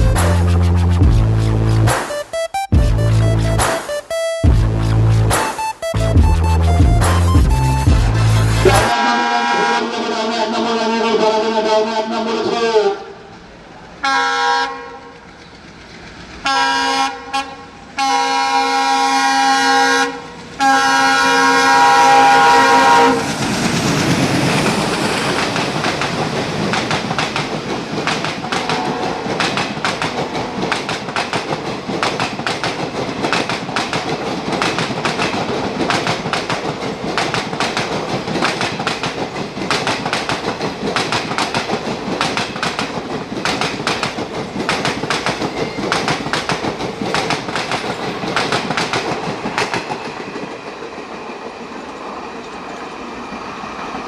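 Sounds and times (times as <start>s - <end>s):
locomotive horn blasts: 8.6s - 10.3s, 14.0s - 15.1s, 16.5s - 23.3s, 28.6s - 29.4s
train wheels clickety-clack: 15.0s - 17.5s, 22.6s - 54.0s.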